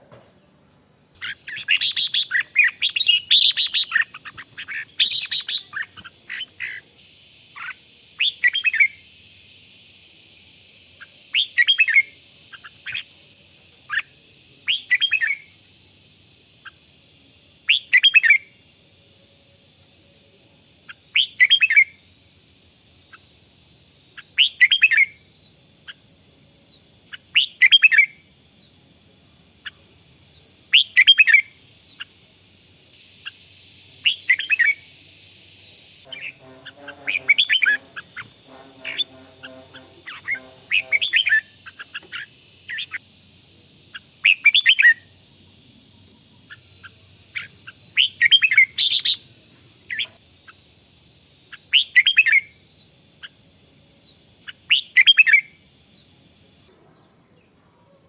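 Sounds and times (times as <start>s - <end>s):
bird chirping phrases: 1.2s - 7.0s, 33.0s - 43.0s
steady high-pitched tone: 33.0s - 41.8s.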